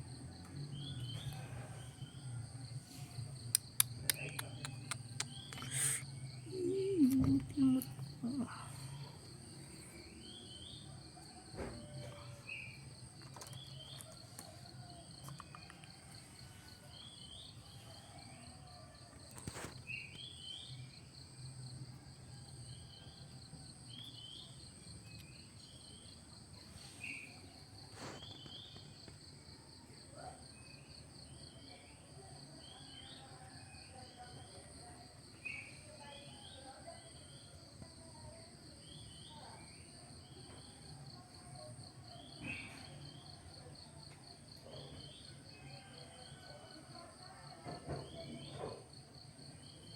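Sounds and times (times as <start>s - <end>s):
insect chorus trilling: 0.1s - 29.1s.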